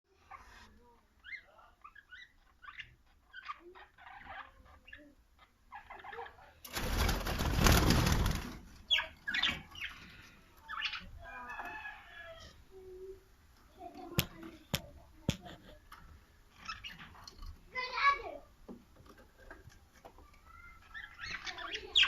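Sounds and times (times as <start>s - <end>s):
lovebirds chirping: 0.1s - 6.6s, 8.8s - 11.4s, 16.5s - 17.3s, 20.3s - 22.0s.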